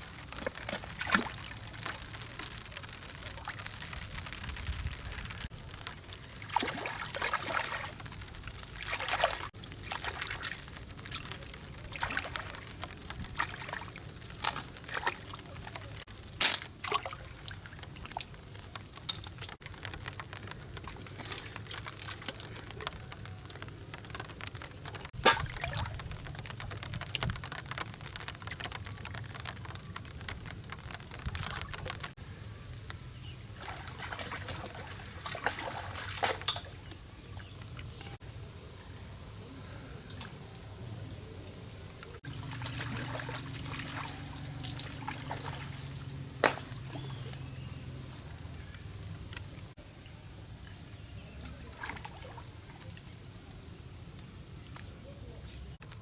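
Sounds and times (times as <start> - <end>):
water pouring and trickling: 0.0 - 38.2, 39.9 - 56.0
sharp splashes or knocks: 5.8 - 32.2, 42.2 - 48.3.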